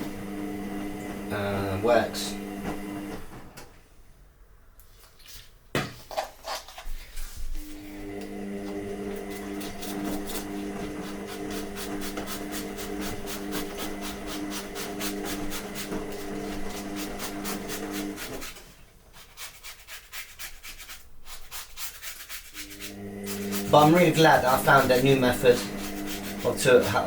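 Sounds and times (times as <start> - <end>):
paper towel scrubbing metal sheet: 8.7 - 27.0
steady low hum: 22.6 - 27.0.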